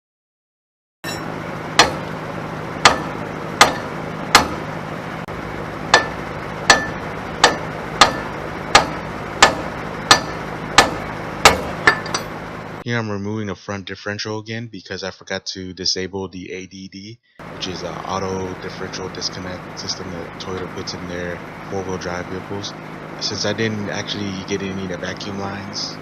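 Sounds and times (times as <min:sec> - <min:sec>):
hammer striking steel: 0:01.0 - 0:04.8, 0:05.6 - 0:12.5
low hum: 0:01.0 - 0:13.1, 0:17.4 - 0:26.0.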